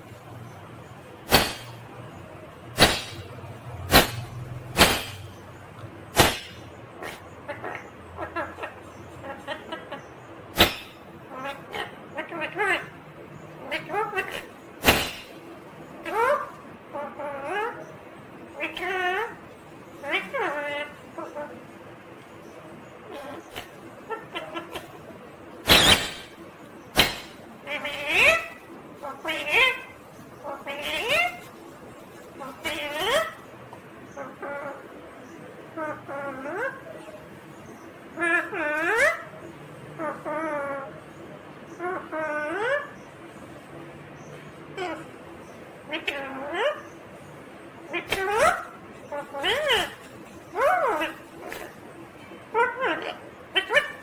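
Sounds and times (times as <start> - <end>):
parrot screeching: 25.7 - 26.3, 27.0 - 31.5, 32.4 - 33.4, 38.2 - 39.4, 41.8 - 43.0, 45.9 - 46.8, 47.9 - 51.8, 52.5 - 54.0.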